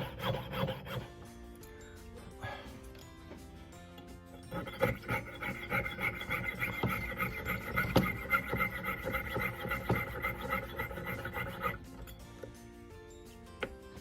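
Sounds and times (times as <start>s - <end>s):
hand tool rasping on metal: 0.0s - 1.2s, 4.4s - 12.1s.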